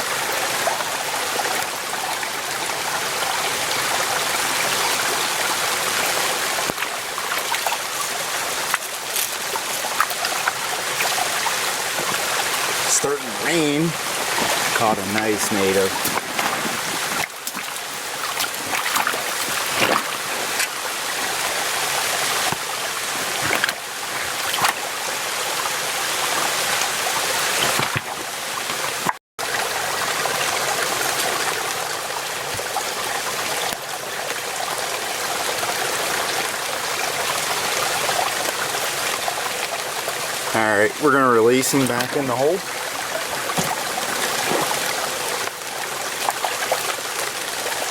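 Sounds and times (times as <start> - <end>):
mountain stream babbling: 0.0 - 47.9.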